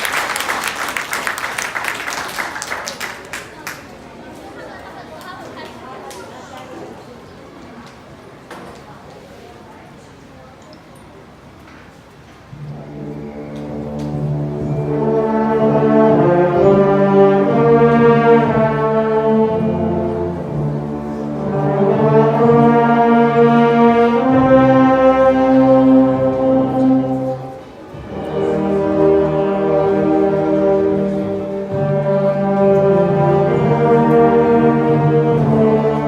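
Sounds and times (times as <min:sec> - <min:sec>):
wind band playing brass chords: 0:12.5 - 0:36.0.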